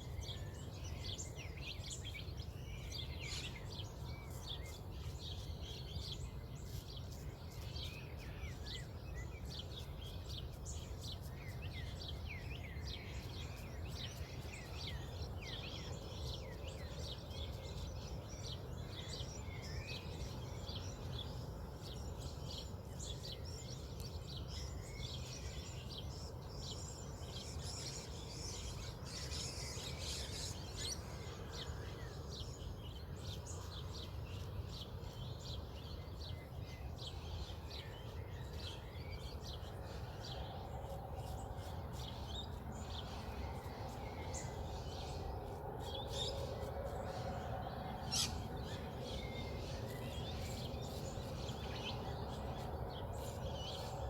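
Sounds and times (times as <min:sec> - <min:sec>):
birds chirping and calling: 0:25.8 - 0:54.0.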